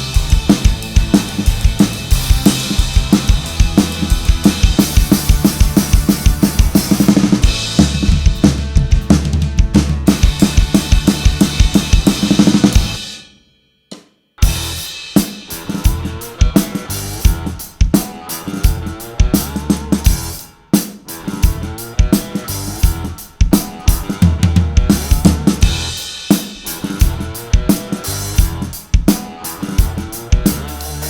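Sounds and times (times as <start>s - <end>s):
backing song: 0.0s - 13.1s
drum kit playing a groove: 0.0s - 13.3s, 13.9s - 31.0s.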